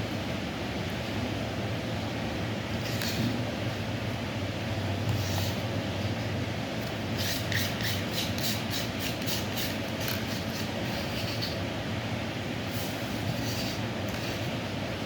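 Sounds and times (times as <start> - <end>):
steady low hum: 0.0 - 15.0
pestle scraping in mortar: 7.2 - 11.6.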